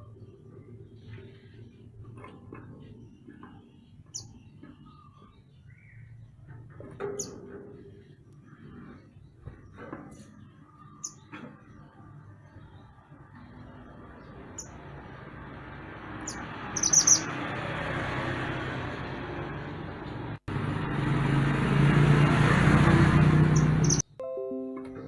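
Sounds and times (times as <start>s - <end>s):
rumble of approaching vehicle: 0.0s - 24.0s
high bird chirps: 10.4s - 11.4s, 16.2s - 17.4s, 23.4s - 24.1s.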